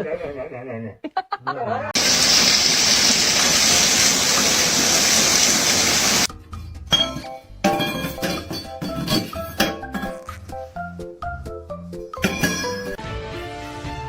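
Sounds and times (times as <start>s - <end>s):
music: 6.3s - 14.0s.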